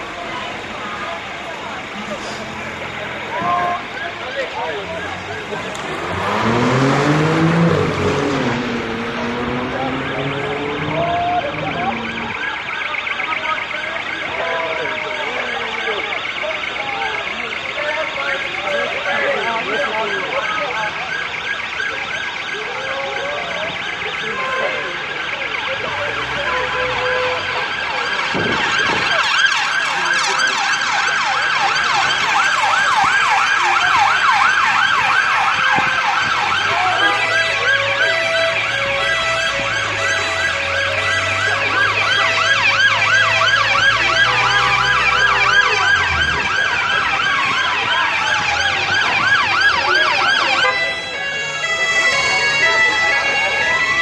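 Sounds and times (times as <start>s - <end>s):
police sirens yelping: 0.0s - 54.0s.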